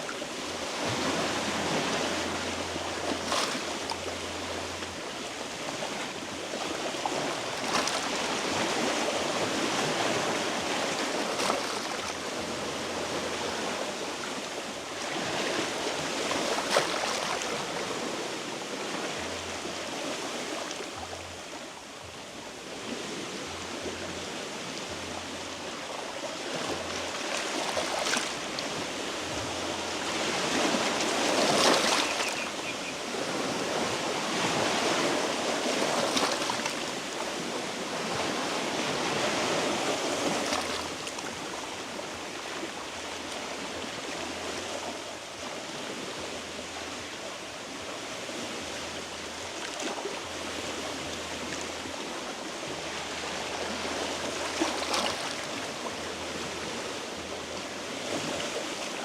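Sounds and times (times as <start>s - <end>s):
waves washing on rocky shore: 26.4s - 59.0s.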